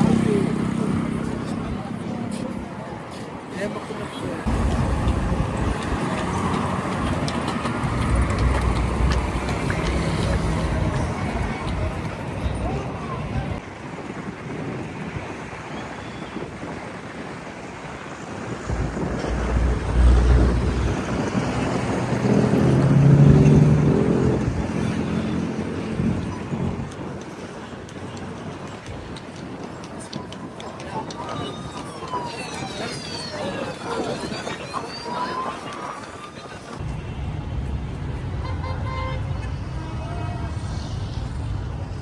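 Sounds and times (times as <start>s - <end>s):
rumble of road traffic: 0.0s - 42.0s
vehicle engine passing by: 4.5s - 13.6s, 18.6s - 27.2s.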